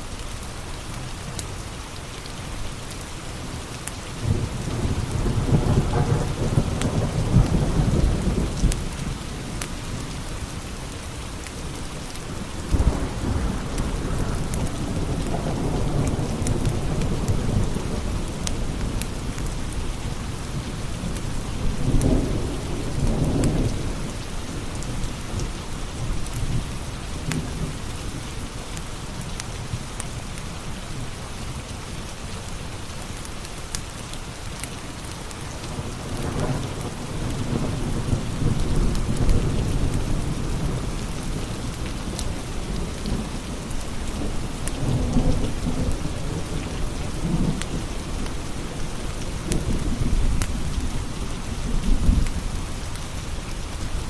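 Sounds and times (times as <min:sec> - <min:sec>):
steady rain hissing: 0:00.0 - 0:54.0
low rumbles of thunder: 0:04.2 - 0:10.1, 0:11.8 - 0:28.5, 0:35.6 - 0:54.0.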